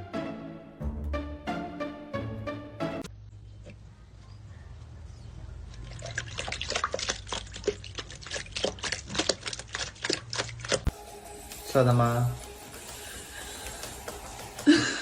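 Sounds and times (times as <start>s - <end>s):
water dripping and splashing: 5.6s - 10.9s.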